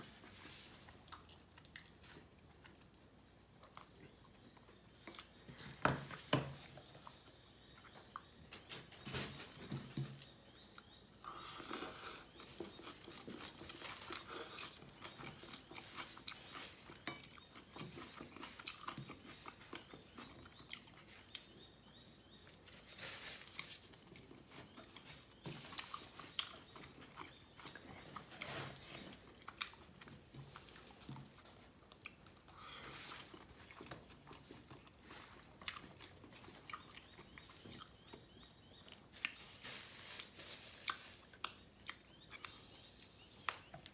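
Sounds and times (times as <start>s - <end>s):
person chewing food: 0.4s - 3.0s, 10.2s - 22.0s, 23.5s - 39.4s, 40.8s - 43.9s.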